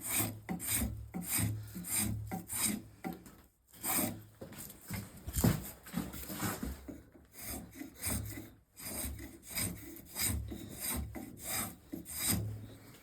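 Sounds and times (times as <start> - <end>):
spokeshave rasping on wood: 0.0 - 4.3, 6.9 - 12.9.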